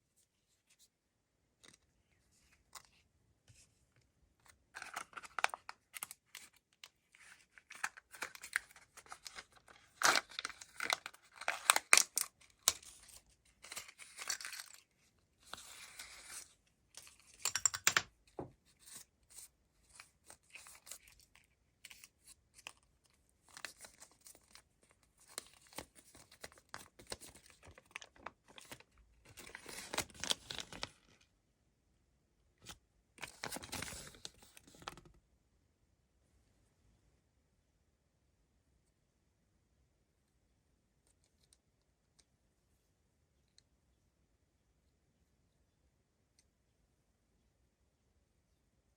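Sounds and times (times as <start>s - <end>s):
foil wrappers crinkling and tearing: 7.6s - 13.0s.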